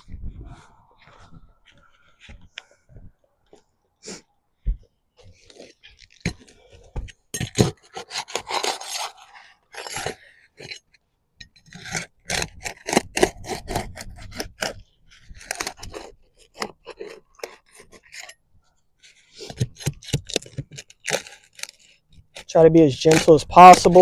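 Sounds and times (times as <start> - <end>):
roof shingles scraping and crackling: 7.5 - 10.4, 19.0 - 24.0.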